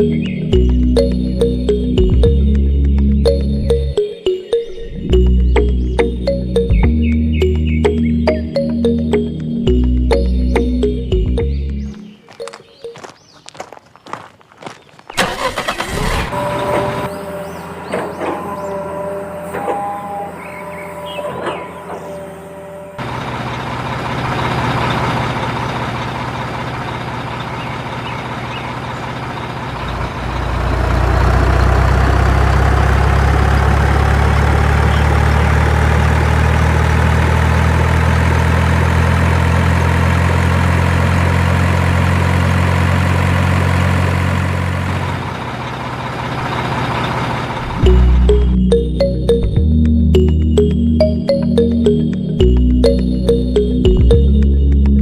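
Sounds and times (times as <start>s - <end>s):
tractor engine idling: 0.0s - 12.1s, 15.2s - 55.0s
short tonal notes: 0.0s - 13.1s, 15.2s - 23.0s, 47.6s - 55.0s.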